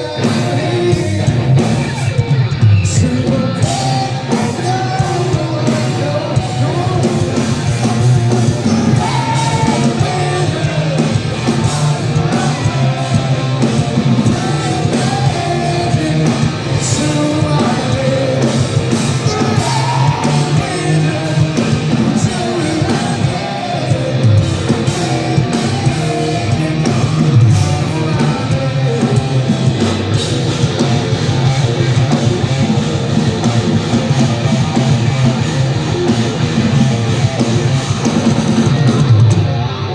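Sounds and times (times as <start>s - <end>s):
person singing: 0.0s - 1.9s, 2.9s - 29.9s
live hard rock band: 0.0s - 39.9s.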